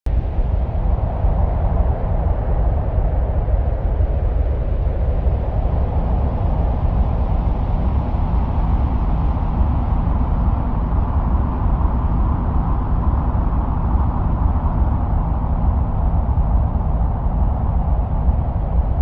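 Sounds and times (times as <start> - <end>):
low rumbling wind: 0.1 - 19.0.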